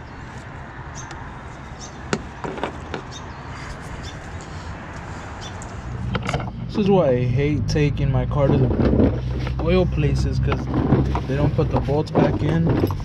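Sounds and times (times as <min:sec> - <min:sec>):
rushing background noise: 0:00.0 - 0:13.0
sharp clicks and knocks: 0:02.1 - 0:03.1, 0:05.6 - 0:06.9, 0:08.2 - 0:13.0.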